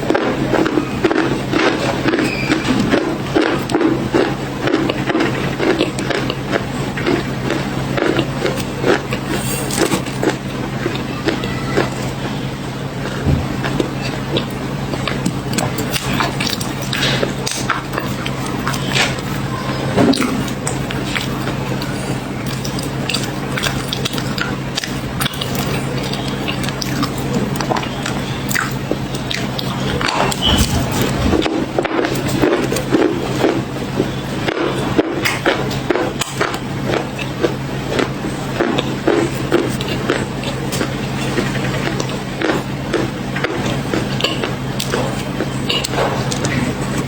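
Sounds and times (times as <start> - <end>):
crunchy chewing: 0.0 - 47.0
steady low hum: 0.0 - 47.0.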